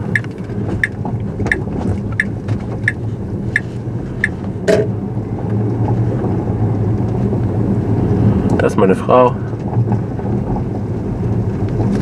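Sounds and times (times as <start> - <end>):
turn signal ticking: 0.0 - 4.9
low tyre and road rumble: 0.0 - 12.0.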